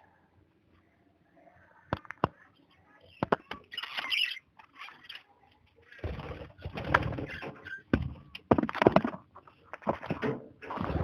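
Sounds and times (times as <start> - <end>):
rustling and scraping in cage: 3.6 - 8.2.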